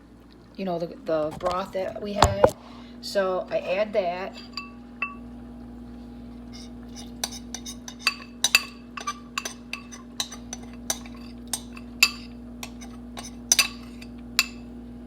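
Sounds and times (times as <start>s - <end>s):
utensil clinking against a pot: 4.4s - 5.2s, 6.5s - 14.7s.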